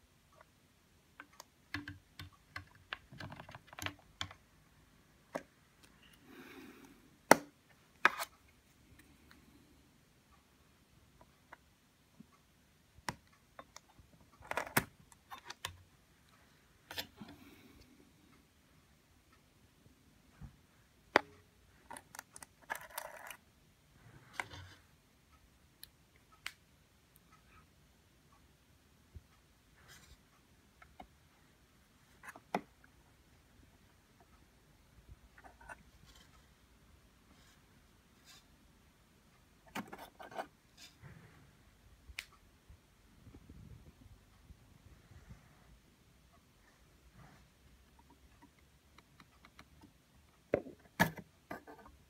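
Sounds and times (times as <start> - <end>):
small clicks and taps: 1.1 - 4.4, 47.9 - 52.0.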